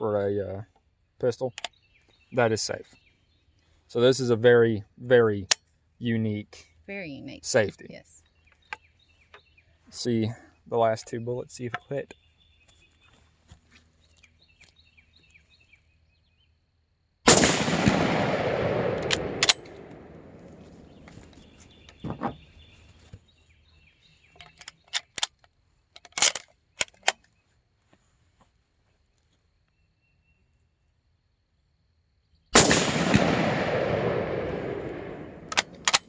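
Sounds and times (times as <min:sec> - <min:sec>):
rifle shot with echo: 0:17.3 - 0:21.8, 0:32.6 - 0:36.0
sharp clicks and knocks: 0:19.0 - 0:19.8, 0:35.5 - 0:36.0.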